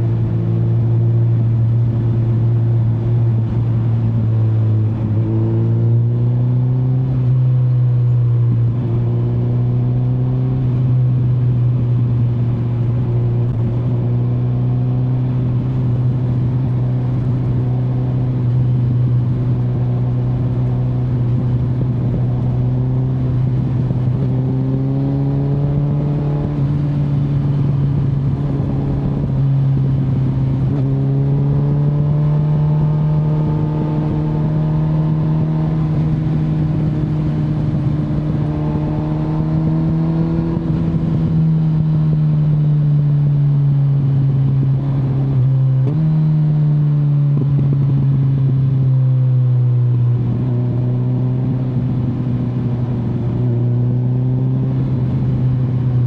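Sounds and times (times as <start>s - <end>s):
rough wind noise: 0.0s - 42.6s
motorcycle engine running: 0.0s - 56.0s.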